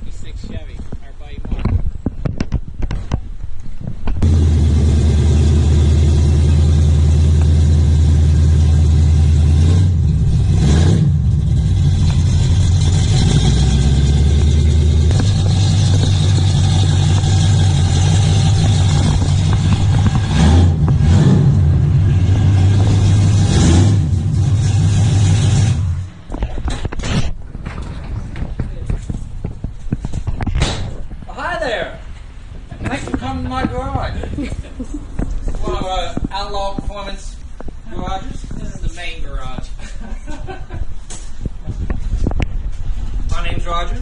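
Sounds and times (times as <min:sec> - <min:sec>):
car engine idling and revving: 0:04.0 - 0:26.3.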